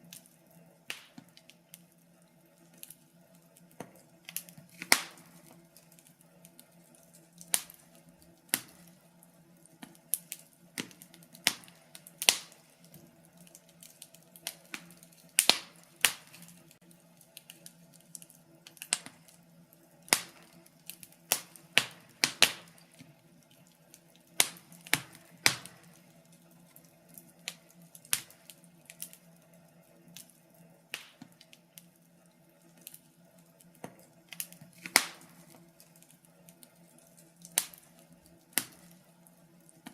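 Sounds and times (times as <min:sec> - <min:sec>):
faint steady hum: 0:00.0 - 0:39.9
wood fire crackling and popping: 0:00.0 - 0:39.9.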